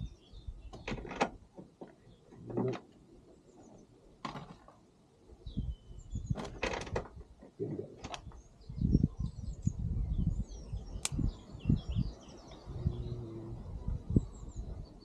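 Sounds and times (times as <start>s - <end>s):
small birds chirping: 0.0s - 1.2s, 5.2s - 6.6s, 7.6s - 15.0s
sharp click: 11.0s - 11.2s.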